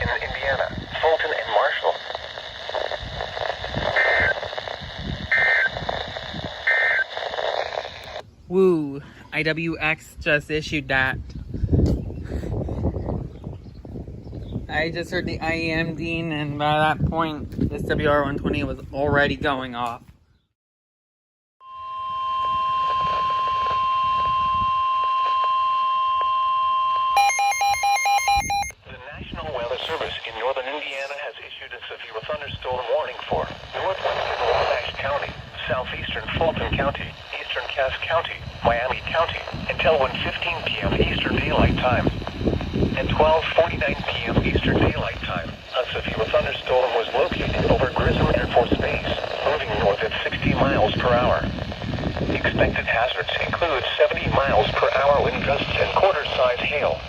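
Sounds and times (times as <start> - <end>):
radio hiss: 0.0 - 8.2, 22.4 - 26.3, 28.8 - 57.0
two-tone data bursts: 0.5 - 8.2, 21.6 - 28.8
steady alarm tone: 21.6 - 28.8
fast alternating electronic beeping: 26.8 - 28.7.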